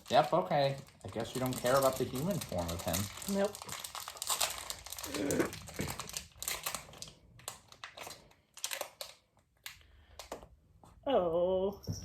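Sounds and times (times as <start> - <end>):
plastic packaging crinkling: 0.0 - 10.4.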